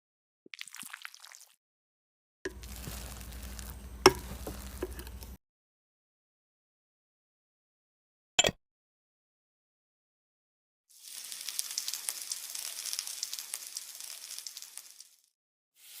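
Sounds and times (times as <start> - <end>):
food sizzling in hot oil: 0.5 - 1.6, 2.5 - 5.4, 10.9 - 16.0.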